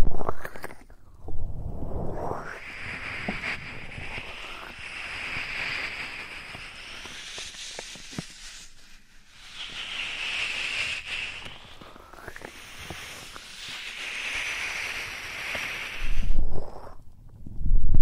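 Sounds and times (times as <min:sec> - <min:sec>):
small crackles: 0:00.0 - 0:01.3, 0:02.1 - 0:17.9
low rumble against microphone: 0:00.9 - 0:04.6, 0:16.0 - 0:18.0
soft rubbing hiss: 0:01.8 - 0:17.3.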